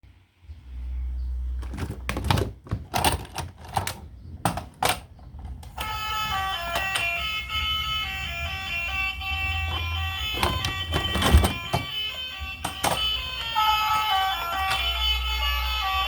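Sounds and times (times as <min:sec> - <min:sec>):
tinkly melody: 0:05.8 - 0:16.0.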